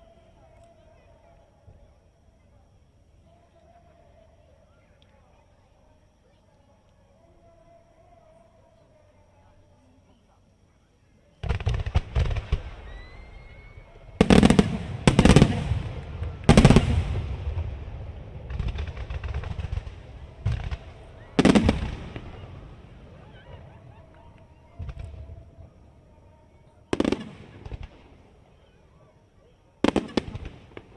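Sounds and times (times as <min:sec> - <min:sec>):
firework cracks: 0:11.4 - 0:25.8
firework booms: 0:11.4 - 0:26.3.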